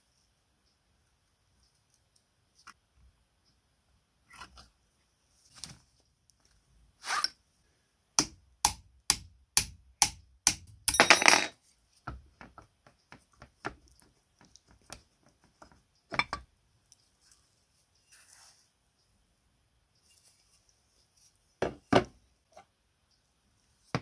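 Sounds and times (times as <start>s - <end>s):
knock: 21.6s - 22.1s.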